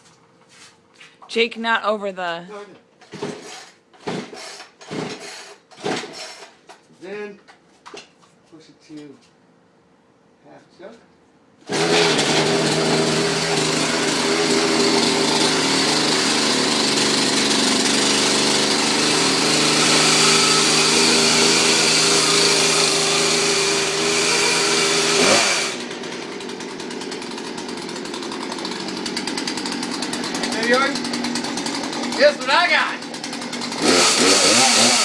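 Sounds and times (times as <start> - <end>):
chainsaw running: 3.0 - 6.5, 11.6 - 35.0.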